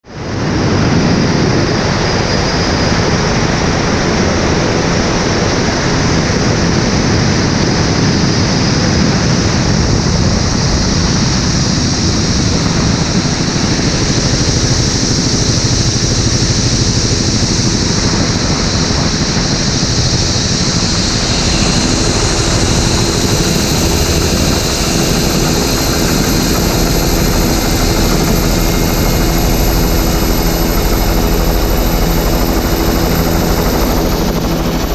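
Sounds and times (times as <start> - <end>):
helicopter rotor and turbine: 0.0 - 34.9
thin very high whine: 11.2 - 34.9.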